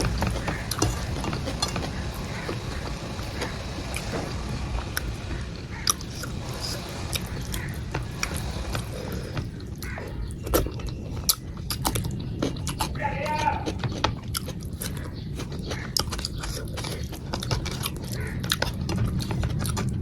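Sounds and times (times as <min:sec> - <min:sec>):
steady low rumble: 0:00.0 - 0:13.0
person chewing food: 0:00.0 - 0:20.0
mouth clicks and smacks: 0:05.8 - 0:20.0.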